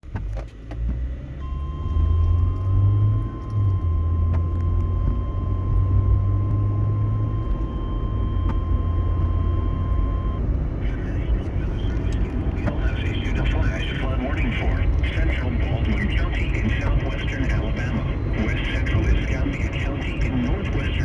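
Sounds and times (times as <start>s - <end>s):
steady alarm tone: 1.4s - 10.4s
loud low rumble: 1.5s - 21.0s.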